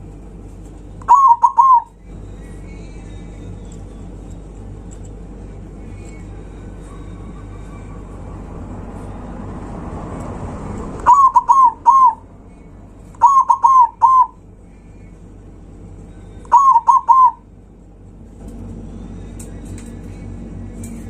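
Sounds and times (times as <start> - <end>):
dove cooing: 1.0 - 2.1, 10.9 - 12.3, 13.2 - 14.5, 16.5 - 17.5.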